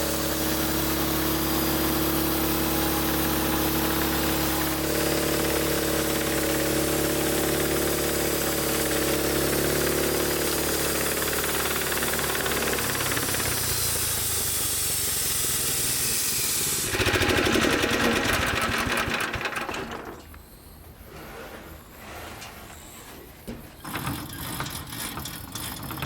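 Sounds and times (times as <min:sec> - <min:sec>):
band sawmill running: 0:00.0 - 0:20.4.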